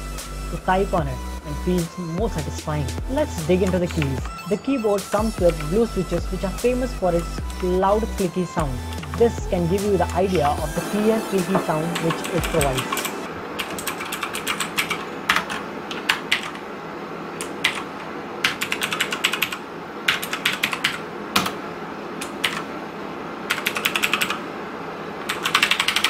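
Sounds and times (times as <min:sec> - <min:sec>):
mechanical keyboard typing: 0:12.0 - 0:16.6, 0:17.5 - 0:21.6, 0:22.2 - 0:22.6, 0:23.5 - 0:24.4, 0:25.2 - 0:26.0.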